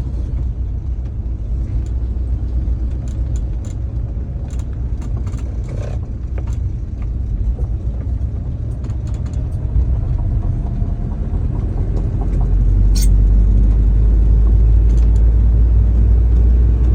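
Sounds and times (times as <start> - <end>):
low rumble of car engine: 0.0 - 16.9
sharp click: 12.9 - 13.2.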